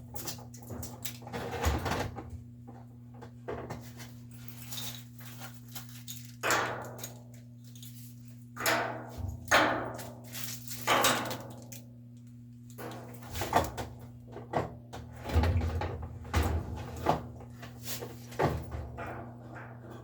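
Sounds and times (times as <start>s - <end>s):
knocks and clunks of tools: 0.0s - 4.0s, 12.8s - 20.0s
steady low hum: 0.0s - 20.0s.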